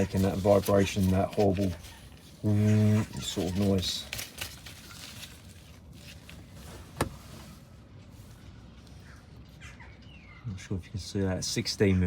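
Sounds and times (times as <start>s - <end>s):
handling noises in engine bay: 0.0s - 8.5s.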